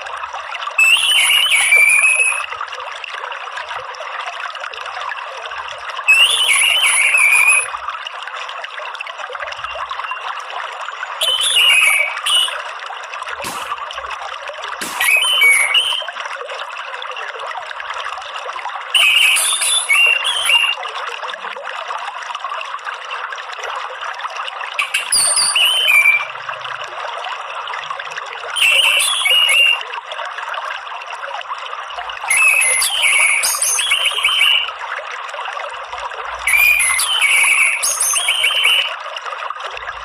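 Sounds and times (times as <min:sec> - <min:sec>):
running water: 0:00.0 - 0:40.0
bird singing chattering phrases: 0:11.2 - 0:12.6, 0:14.8 - 0:16.1, 0:19.0 - 0:20.8, 0:24.8 - 0:26.3, 0:32.3 - 0:34.7, 0:36.5 - 0:38.9.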